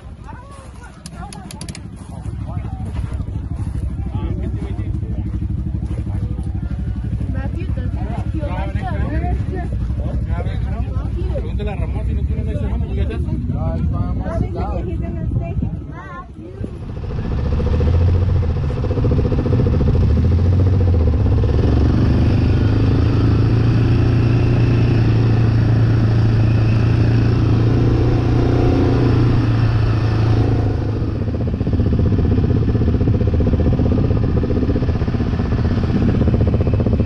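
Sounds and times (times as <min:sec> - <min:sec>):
off-road vehicle engine droning: 0:00.0 - 0:37.0.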